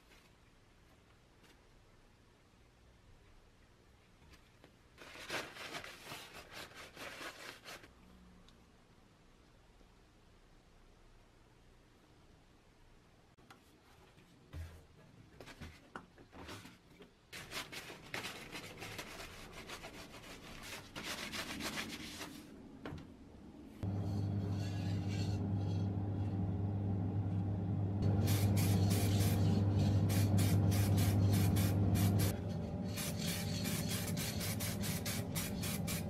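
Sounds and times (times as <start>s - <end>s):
hand scraping and rubbing: 17.4s - 22.6s, 23.7s - 25.9s, 28.0s - 36.0s.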